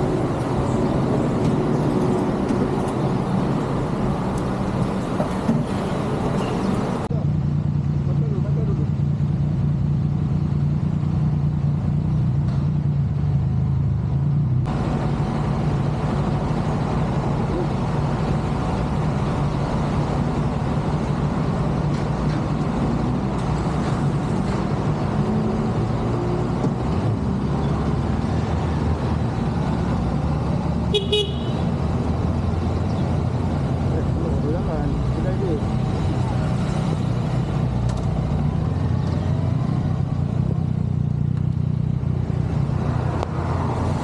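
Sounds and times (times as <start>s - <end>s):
vehicle engine running: 0.0s - 22.3s
road and wind noise: 0.0s - 44.0s.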